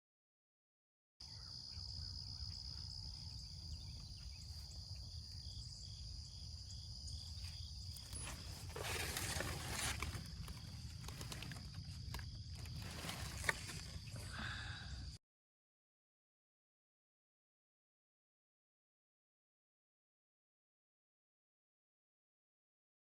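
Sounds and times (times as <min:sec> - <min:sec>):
insects droning: 0:01.2 - 0:15.2.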